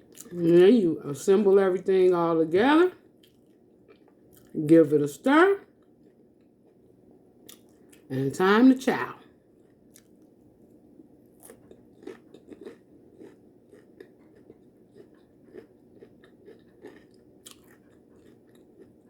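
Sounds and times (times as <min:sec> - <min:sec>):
chewing and crunching chips: 0:03.1 - 0:04.6, 0:05.6 - 0:08.1, 0:09.3 - 0:19.0.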